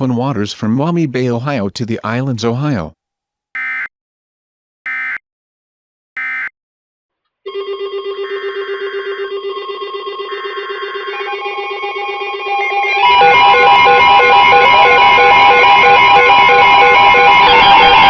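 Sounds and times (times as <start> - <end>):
digital data tone bursts: 3.6 - 3.9, 4.9 - 5.2, 6.2 - 6.5.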